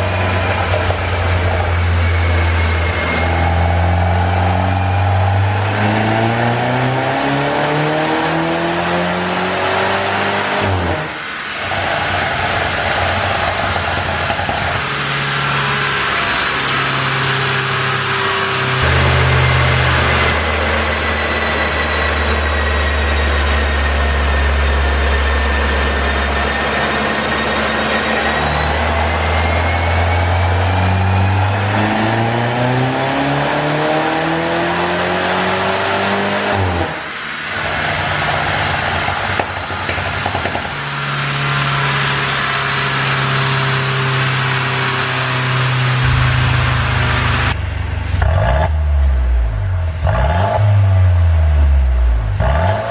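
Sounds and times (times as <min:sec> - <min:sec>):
car engine revving on a dyno: 0:00.0 - 0:52.9.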